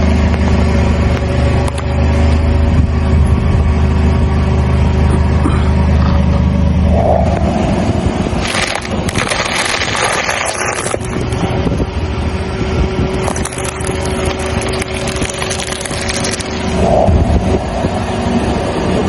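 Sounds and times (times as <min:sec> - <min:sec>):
low car noise: 0:00.0 - 0:19.0
tyre crushing crunchy objects: 0:08.4 - 0:11.5.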